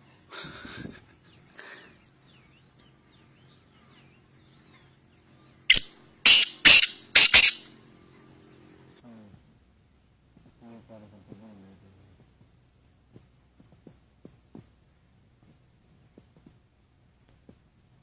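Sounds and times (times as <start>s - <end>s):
bird calling harsh grating notes: 5.7s - 7.7s.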